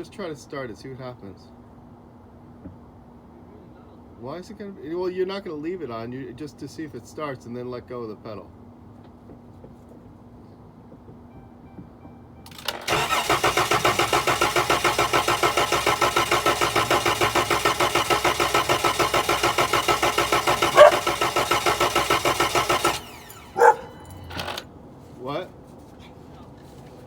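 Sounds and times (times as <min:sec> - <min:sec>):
engine starter cranking: 0:12.5 - 0:24.7.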